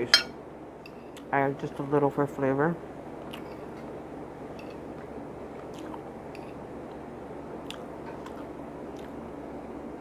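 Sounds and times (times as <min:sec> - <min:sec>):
wet chewing of food: 0:07.6 - 0:09.2.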